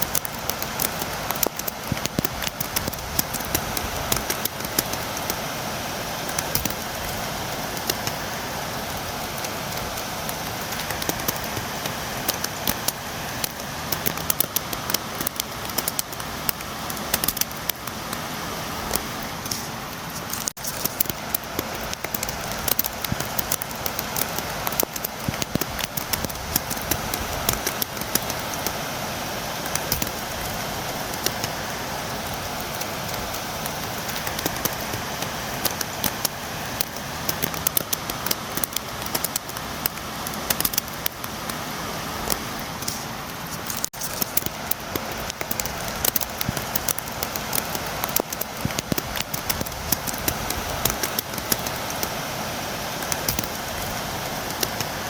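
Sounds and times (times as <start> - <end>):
raindrops tapping on window: 0.0 - 5.6, 20.3 - 28.9, 43.7 - 52.2
steady rain: 0.0 - 55.0.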